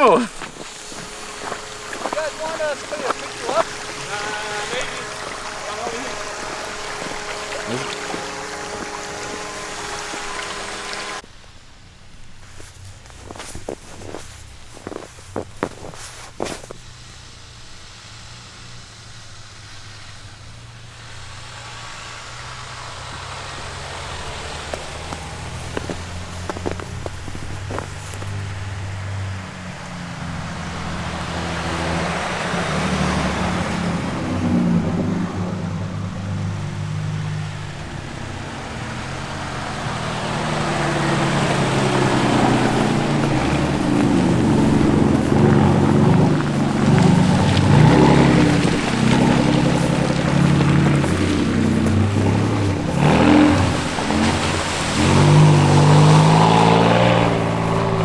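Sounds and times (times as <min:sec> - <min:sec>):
rushing noise: 0:00.0 - 0:11.2
truck engine hum: 0:00.0 - 0:58.0
tyres hissing on snow: 0:00.0 - 0:58.0.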